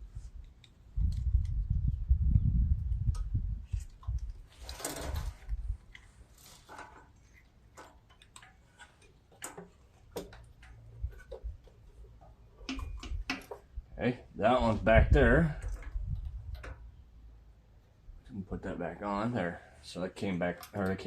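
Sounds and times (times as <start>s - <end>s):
scraping rustle: 3.7s - 12.0s
hand tools clicking and tapping: 6.8s - 13.7s.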